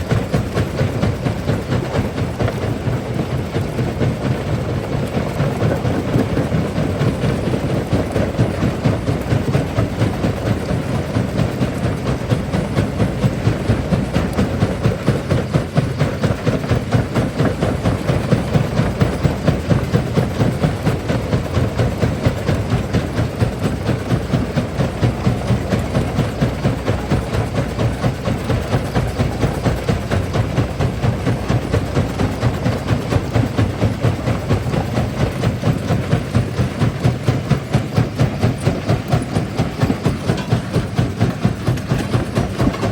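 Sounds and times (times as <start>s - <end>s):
jaw crusher rumbling: 16.8s - 42.9s.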